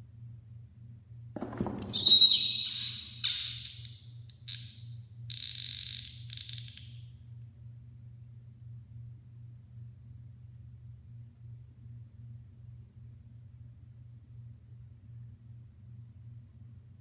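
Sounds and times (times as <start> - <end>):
thump: 1.4 - 2.2.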